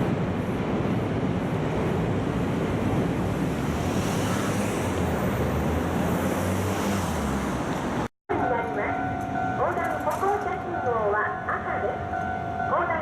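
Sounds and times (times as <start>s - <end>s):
passing vehicles roaring: 0.0s - 8.1s.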